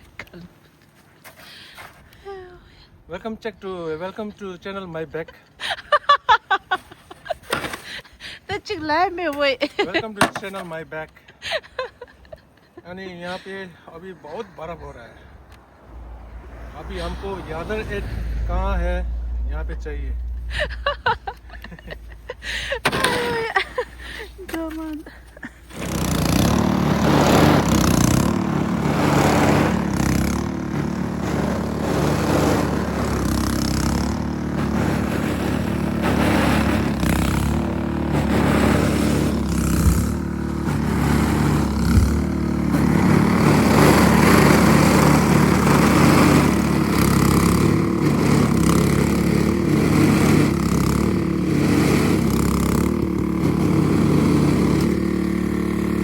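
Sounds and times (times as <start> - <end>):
small gasoline engine running: 21.8 - 56.0.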